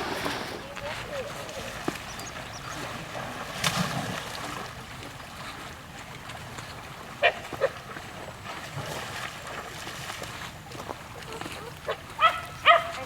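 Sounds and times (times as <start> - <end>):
dog barking: 11.9 - 13.0.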